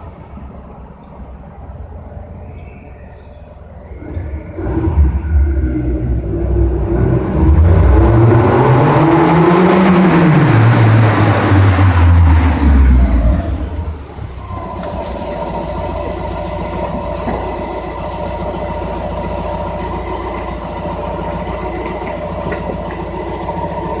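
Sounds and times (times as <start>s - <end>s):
car engine idling: 10.3s - 24.0s.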